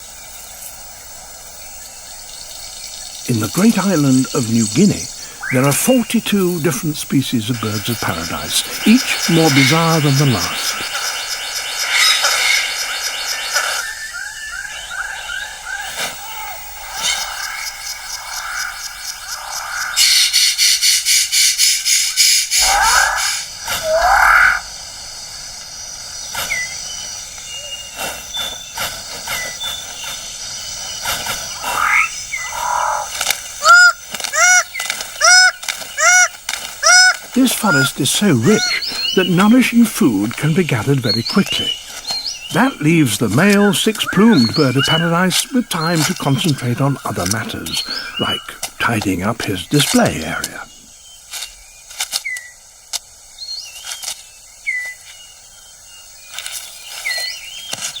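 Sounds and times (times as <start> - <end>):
high wavering bird calls: 0.0 - 58.0
insect drone: 0.0 - 58.0
short animal calls: 13.5 - 24.7, 31.1 - 39.2.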